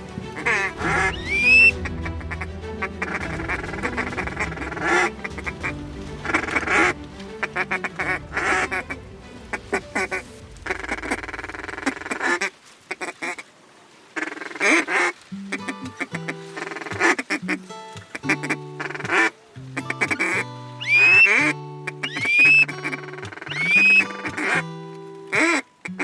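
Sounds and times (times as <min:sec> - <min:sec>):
background music: 0:00.0 - 0:12.2, 0:15.4 - 0:26.0
duck quacking: 0:00.4 - 0:09.0, 0:14.2 - 0:24.6, 0:25.3 - 0:26.0.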